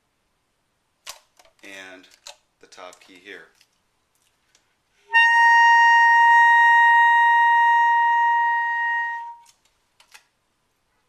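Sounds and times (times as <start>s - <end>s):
saxophone high sustained note: 5.1s - 9.4s.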